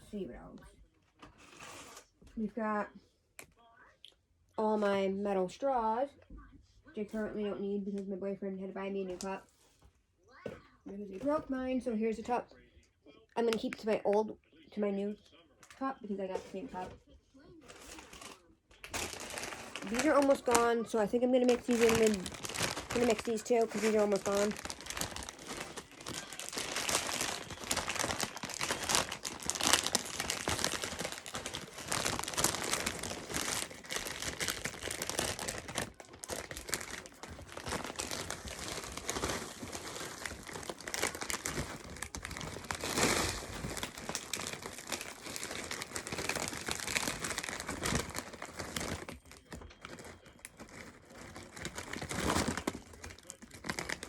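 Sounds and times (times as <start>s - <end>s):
plastic packets crinkling: 17.6s - 54.0s.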